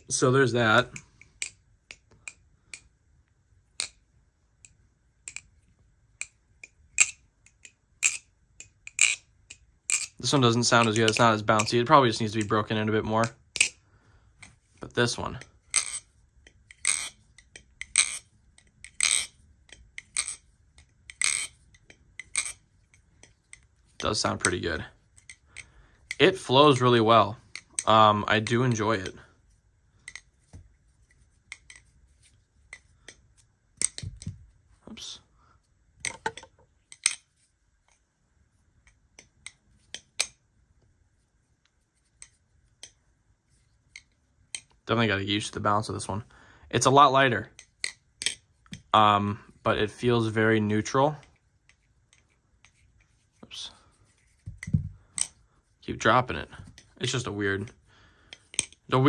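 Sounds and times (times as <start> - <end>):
metallic knife clicks and clacks: 6.2 - 10.1
butterfly knife handles clacking: 6.2 - 10.2, 13.2 - 13.8, 15.4 - 29.2, 36.0 - 37.2.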